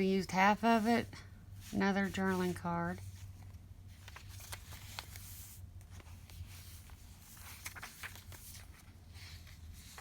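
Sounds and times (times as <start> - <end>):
low steady hum: 0.0 - 10.0
paper rustling: 1.6 - 10.0.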